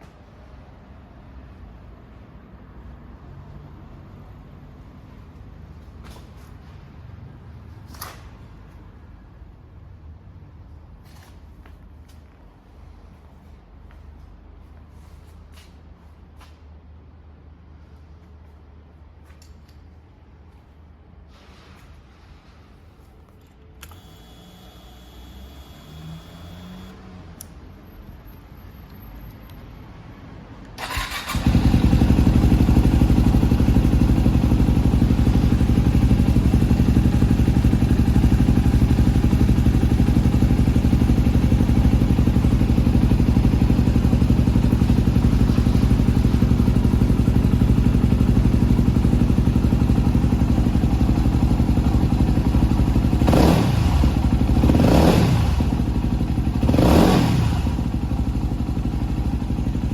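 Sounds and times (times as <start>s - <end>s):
motorcycle engine idling and revving: 23.8s - 28.0s, 30.7s - 59.9s.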